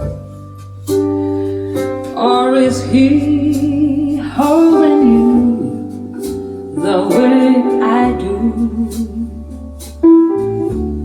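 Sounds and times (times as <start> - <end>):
guitar and piano music: 0.0 - 11.0
person singing: 2.2 - 9.9.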